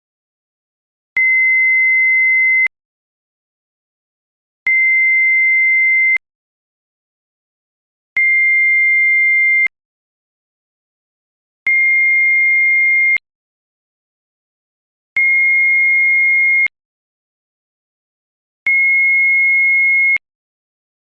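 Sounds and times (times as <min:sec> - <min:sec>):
electronic sine tone beeps: 0:01.2 - 0:02.7.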